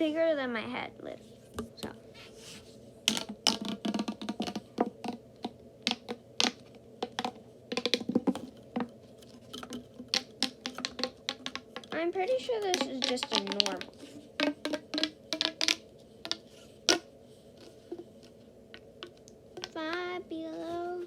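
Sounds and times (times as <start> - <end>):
pop tube toy clicks and pops: 9.6 - 12.0, 12.7 - 17.0.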